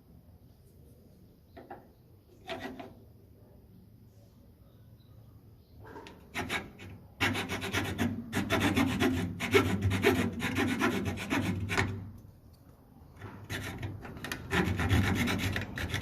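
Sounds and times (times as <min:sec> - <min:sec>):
hand file rasping on metal: 0:06.3 - 0:12.1, 0:13.2 - 0:16.0.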